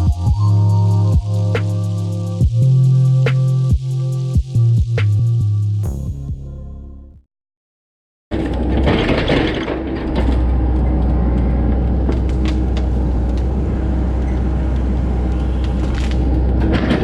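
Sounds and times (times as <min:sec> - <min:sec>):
heavy equipment engine rumbling: 0:08.4 - 0:17.0.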